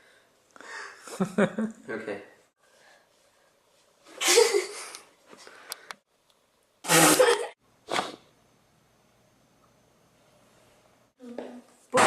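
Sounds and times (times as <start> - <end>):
person sneezing loudly: 6.9 - 8.2.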